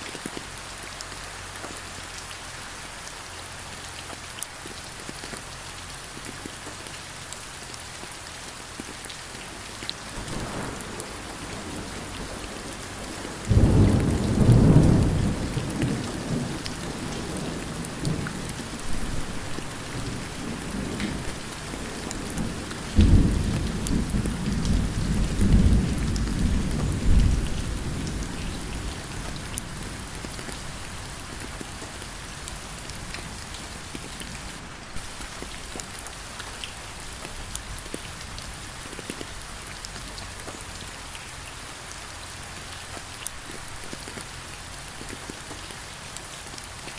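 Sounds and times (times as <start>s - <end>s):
steady rain: 0.0s - 46.9s
thunder rolling: 10.1s - 31.8s.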